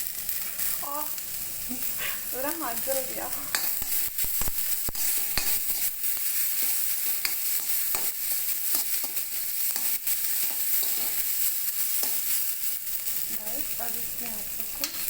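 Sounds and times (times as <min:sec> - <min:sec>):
vegetables sizzling in hot oil: 0:00.0 - 0:15.0
spatula scraping and tapping pan: 0:02.9 - 0:12.4, 0:14.2 - 0:15.0.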